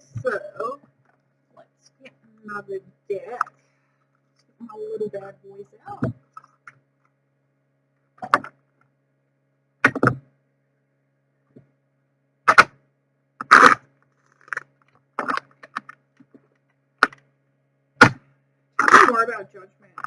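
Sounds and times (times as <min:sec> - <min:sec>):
cards being shuffled: 0:13.4 - 0:13.8, 0:18.8 - 0:19.2.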